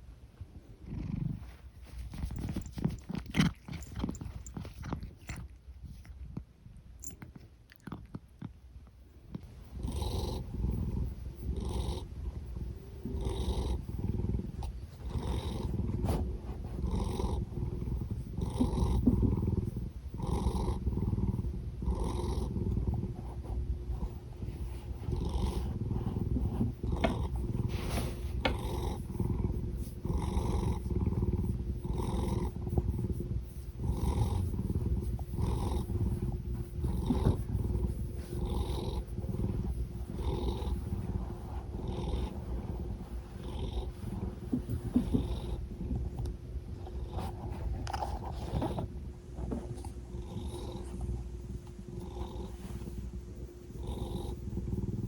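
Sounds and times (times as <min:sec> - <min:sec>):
cat purring: 0:00.0 - 0:55.0
cat breathy snore: 0:00.8 - 0:05.4, 0:09.8 - 0:55.0.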